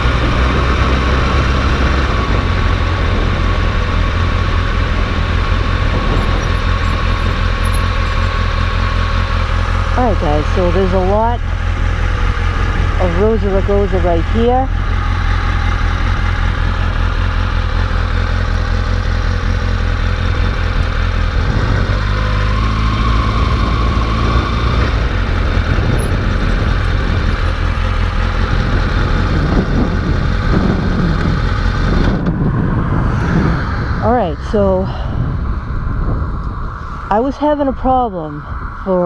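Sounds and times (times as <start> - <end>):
motorcycle engine idling: 2.3 - 21.4, 25.0 - 32.2.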